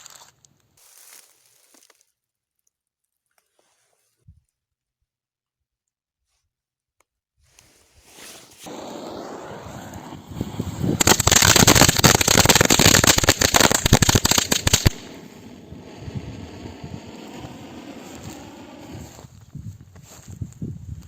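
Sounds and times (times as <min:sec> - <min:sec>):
firecracker cracks: 0:08.5 - 0:19.0.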